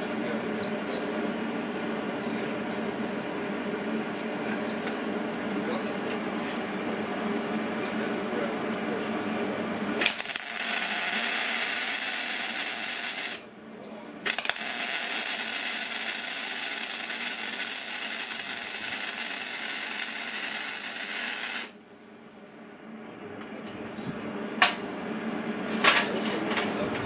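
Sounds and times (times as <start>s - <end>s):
welding gun click: 10.0s - 13.4s, 14.3s - 21.7s
welding arc hissing: 10.0s - 13.5s, 14.2s - 21.8s.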